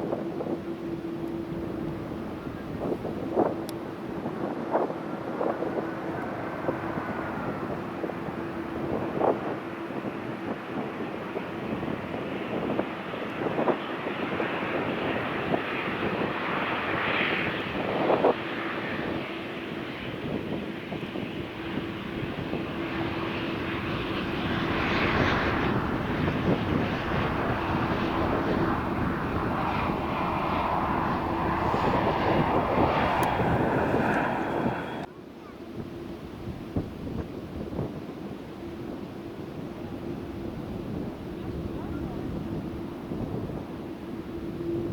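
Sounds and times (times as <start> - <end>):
jet engines passing: 0.0 - 35.2.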